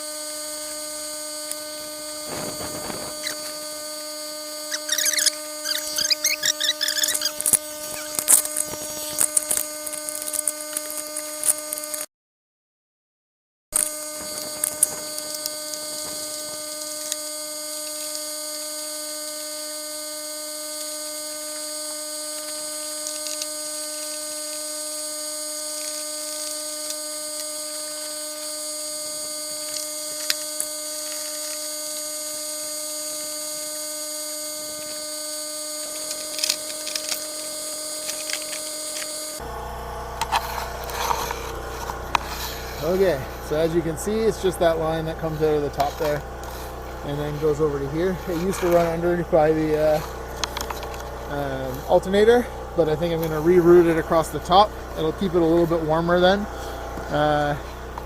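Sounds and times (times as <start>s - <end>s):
high-pitched generator whine: 0.0s - 12.1s, 13.8s - 58.0s.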